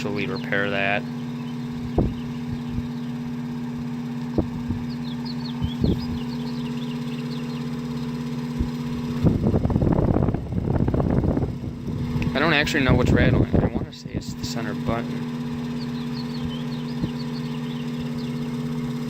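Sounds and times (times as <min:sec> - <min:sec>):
fan knocking: 0:00.0 - 0:19.0
fan rattling: 0:00.0 - 0:19.0
table fan motor hum: 0:00.0 - 0:19.0.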